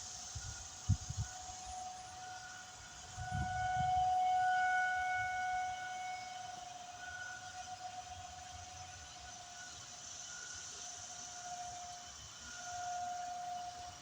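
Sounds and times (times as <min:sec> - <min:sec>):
tornado warning siren: 0:00.4 - 0:09.4.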